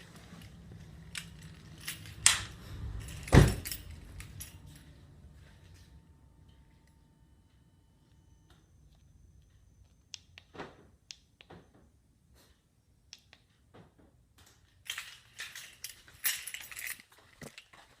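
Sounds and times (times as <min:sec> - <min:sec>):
faint hum: 0:00.0 - 0:13.7.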